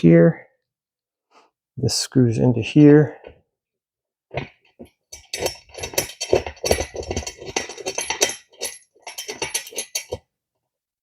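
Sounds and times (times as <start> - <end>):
metal parts clinking and scraping: 4.8 - 10.2.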